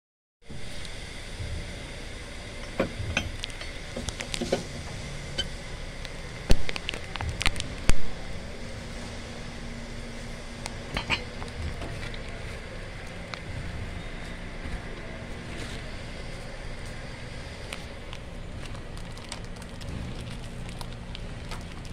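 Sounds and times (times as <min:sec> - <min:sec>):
steady background hum: 0:00.4 - 0:21.9.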